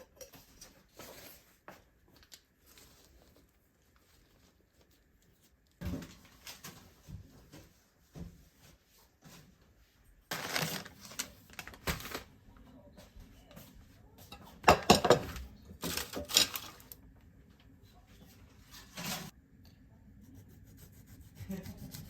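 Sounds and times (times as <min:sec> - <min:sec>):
dishes and utensils clattering: 0:00.0 - 0:01.3, 0:14.2 - 0:17.0.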